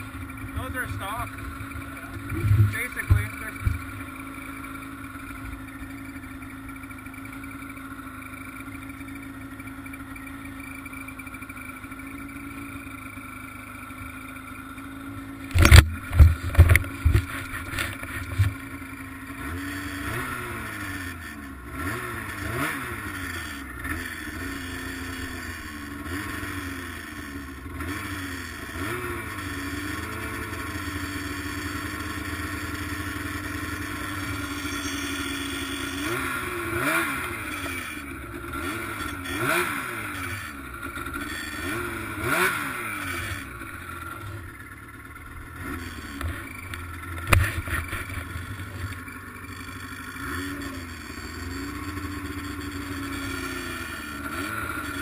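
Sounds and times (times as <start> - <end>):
snowmobile engine running: 0.0 - 55.0
loud engine knocks: 2.3 - 3.9.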